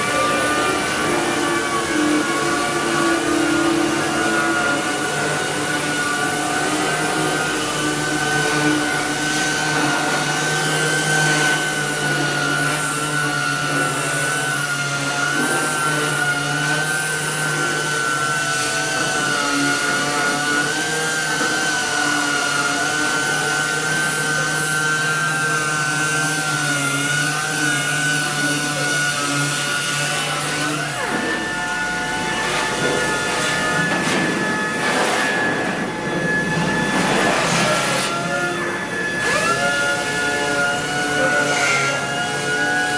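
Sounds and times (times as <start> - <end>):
power sander running: 0.0 - 42.9.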